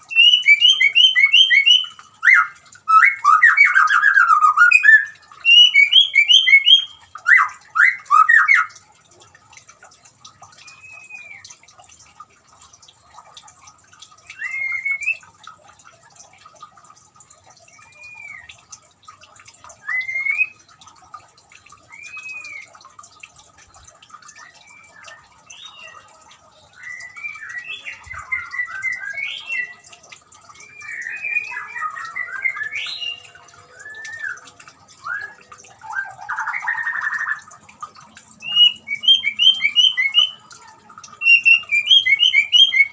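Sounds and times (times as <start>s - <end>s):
faint trickling water: 0.0s - 42.9s
bird singing: 0.1s - 8.7s, 24.4s - 26.1s, 26.7s - 29.8s, 30.5s - 37.4s, 38.4s - 42.9s.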